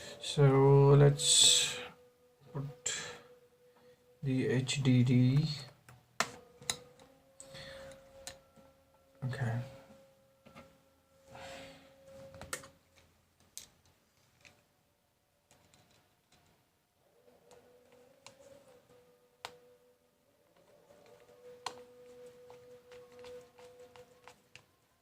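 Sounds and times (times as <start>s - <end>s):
laptop parts and tools clicking: 5.4s - 8.7s, 12.2s - 14.7s, 15.5s - 19.7s, 20.4s - 24.8s.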